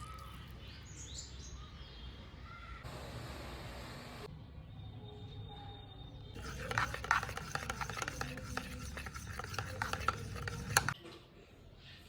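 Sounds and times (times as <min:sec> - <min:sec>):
utensil scraping in container: 0:06.4 - 0:11.0.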